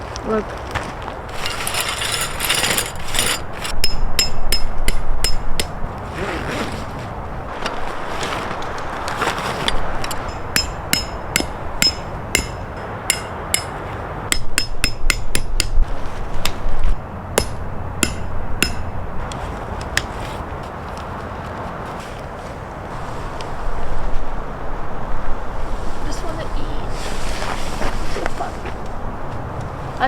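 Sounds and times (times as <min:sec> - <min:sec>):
low wind rumble: 0:00.0 - 0:30.0
hammer striking metal: 0:01.4 - 0:05.8, 0:10.0 - 0:15.8, 0:17.4 - 0:19.0.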